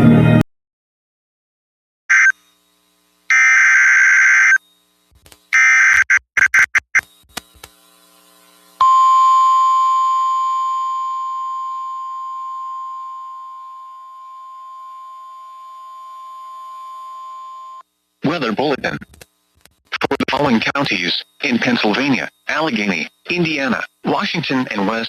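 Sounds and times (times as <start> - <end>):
buzzy digital data bursts: 2.1 - 2.4, 3.3 - 4.6, 5.5 - 7.1, 20.1 - 25.0
steady warning alarm tone: 2.1 - 2.5, 3.3 - 4.6, 5.5 - 6.8.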